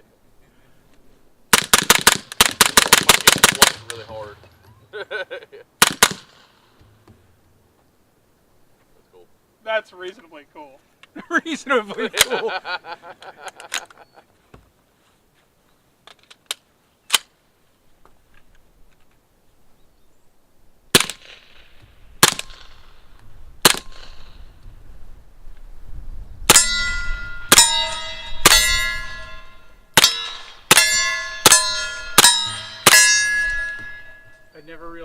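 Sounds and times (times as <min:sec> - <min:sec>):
suppressed pistol shots: 0:01.5 - 0:04.1, 0:05.8 - 0:06.5, 0:20.9 - 0:23.0, 0:23.6 - 0:24.4
steel target clanging: 0:26.5 - 0:34.7.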